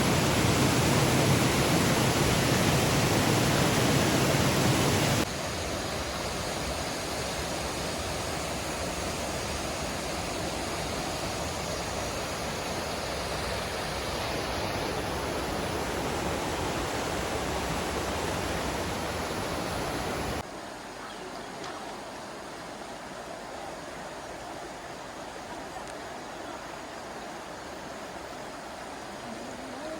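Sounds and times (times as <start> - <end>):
river water rushing: 0.0 - 21.0.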